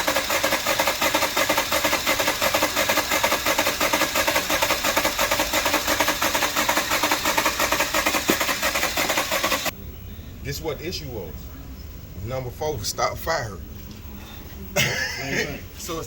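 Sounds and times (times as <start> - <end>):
engine cranking without starting: 0.0 - 9.7.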